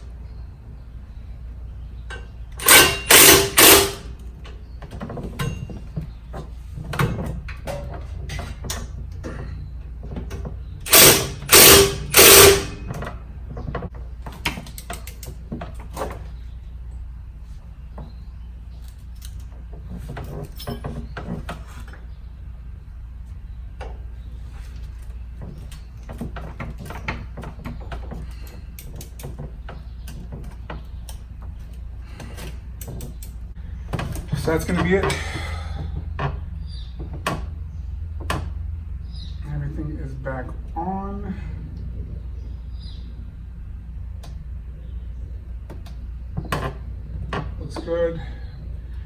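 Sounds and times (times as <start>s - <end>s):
tools and metal parts clicking: 2.1s - 5.9s, 10.3s - 13.2s, 14.3s - 16.2s, 18.8s - 22.0s, 25.7s - 35.3s
impact wrench bursts: 2.6s - 4.3s, 10.8s - 13.1s.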